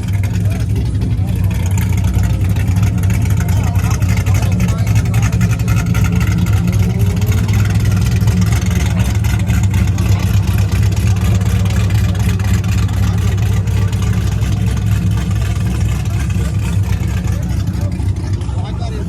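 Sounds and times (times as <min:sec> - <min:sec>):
car engine running: 0:00.0 - 0:19.0.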